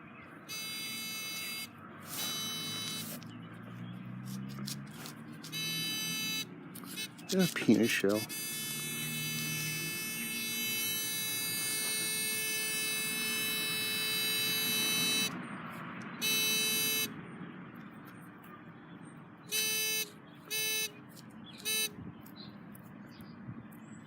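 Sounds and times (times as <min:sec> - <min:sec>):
metal detector buzzing tone: 0:00.5 - 0:03.3, 0:04.5 - 0:15.4, 0:16.2 - 0:17.1, 0:19.5 - 0:21.0, 0:21.6 - 0:22.0
metal detector short beeps: 0:00.5 - 0:03.3, 0:05.0 - 0:15.3, 0:16.2 - 0:17.1, 0:19.5 - 0:21.0, 0:21.6 - 0:22.0.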